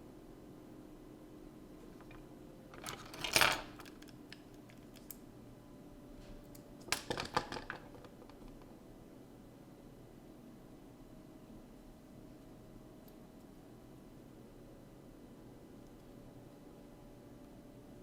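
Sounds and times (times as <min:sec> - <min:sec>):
metal tools clinking on workbench: 0:02.0 - 0:04.4.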